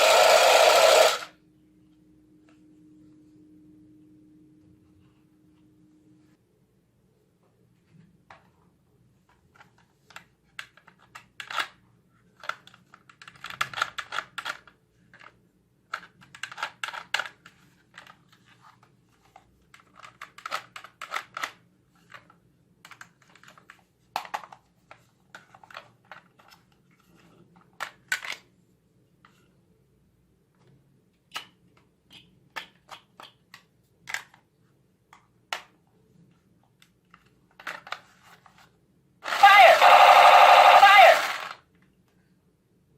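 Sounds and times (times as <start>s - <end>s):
toy gun plastic clicks: 0.0s - 1.3s, 10.6s - 11.8s, 12.4s - 15.3s, 15.9s - 17.4s, 39.2s - 41.6s.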